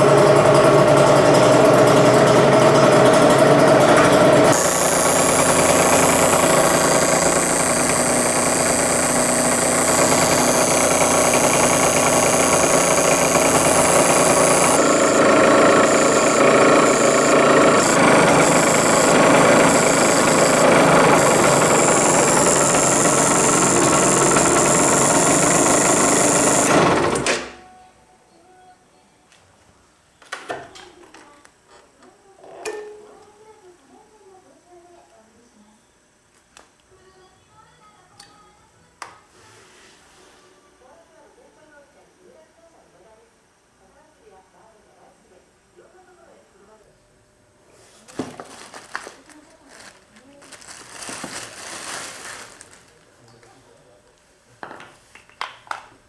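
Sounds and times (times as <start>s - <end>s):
rattling buzz: 0.0s - 27.3s
two-stroke engine running: 0.0s - 27.3s.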